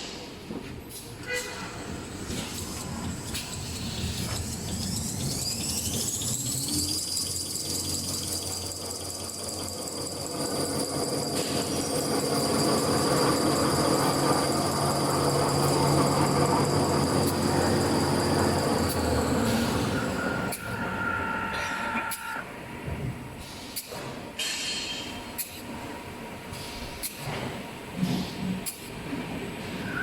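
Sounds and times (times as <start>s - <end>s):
machine high whine: 1.4s - 23.0s
low machine hum: 1.8s - 21.8s.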